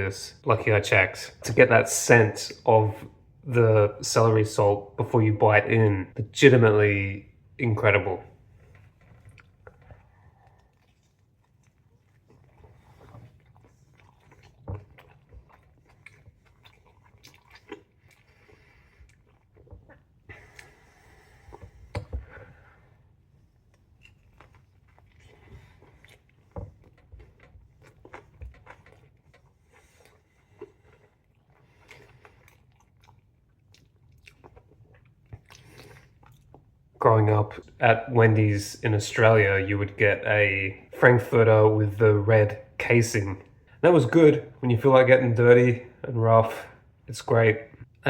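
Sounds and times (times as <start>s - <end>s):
chewing and biting food: 8.4s - 37.0s.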